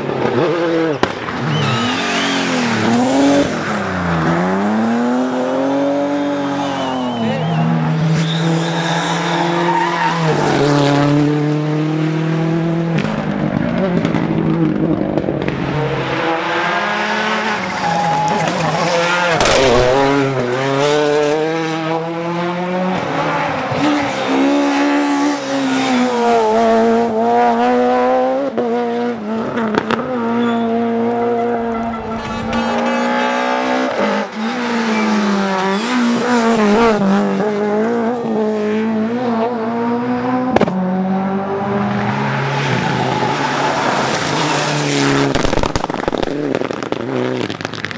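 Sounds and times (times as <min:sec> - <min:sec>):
rally car engines revving: 0:00.0 - 0:47.9
sharp crack: 0:17.3 - 0:20.5, 0:42.8 - 0:47.9.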